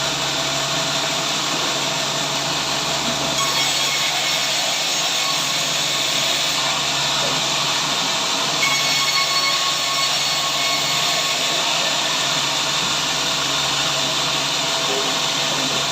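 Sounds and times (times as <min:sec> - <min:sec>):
saw cutting wood: 0:01.8 - 0:15.9.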